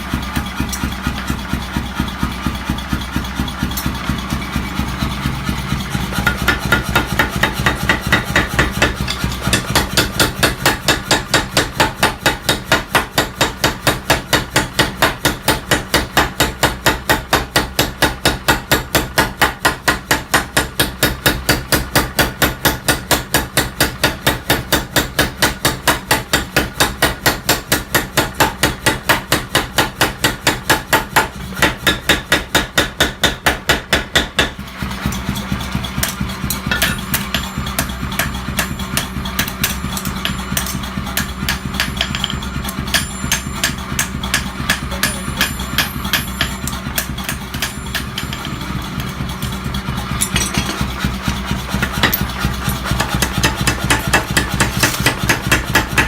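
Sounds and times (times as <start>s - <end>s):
motor running: 0.0s - 15.1s, 34.5s - 56.0s.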